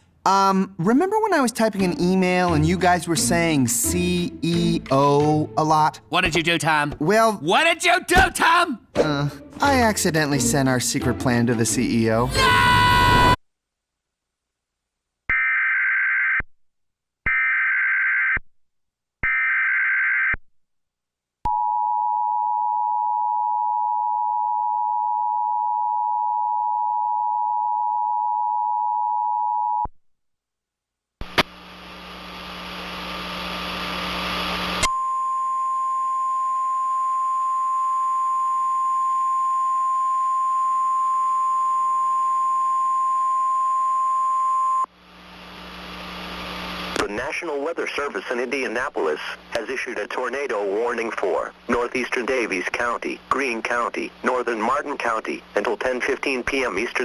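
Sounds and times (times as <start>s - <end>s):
static and hum: 31.2s - 37.0s, 39.2s - 57.0s.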